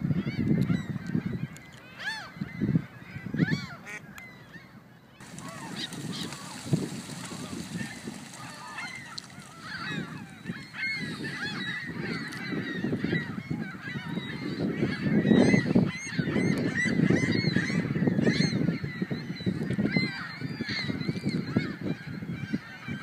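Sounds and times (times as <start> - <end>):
flock of gulls calling: 5.2 - 23.0.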